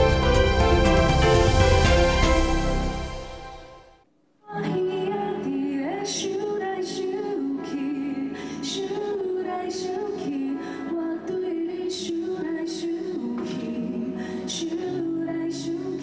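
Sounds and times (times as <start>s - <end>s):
musical accompaniment: 0.0s - 4.0s
woman singing slow melody: 4.4s - 16.0s.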